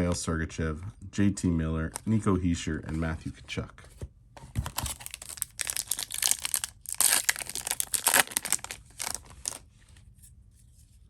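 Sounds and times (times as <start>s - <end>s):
foil wrapper tearing and crinkling: 4.7s - 9.6s.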